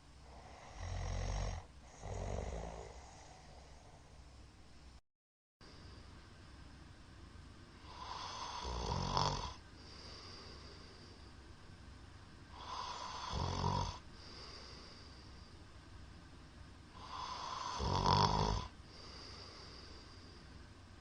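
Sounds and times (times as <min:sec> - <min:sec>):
man snoring: 0:00.2 - 0:03.8, 0:07.8 - 0:10.8, 0:12.5 - 0:14.9, 0:17.0 - 0:19.9.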